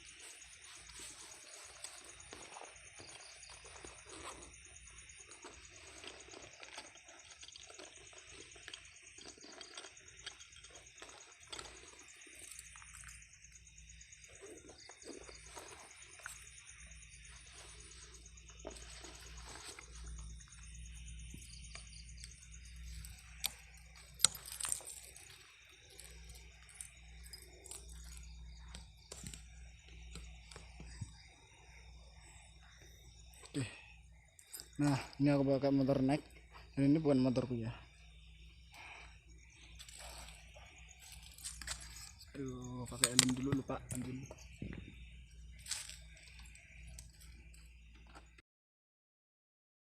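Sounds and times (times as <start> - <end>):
night insects chirping: 0.0 - 48.4
sharp clicks: 42.9 - 44.2.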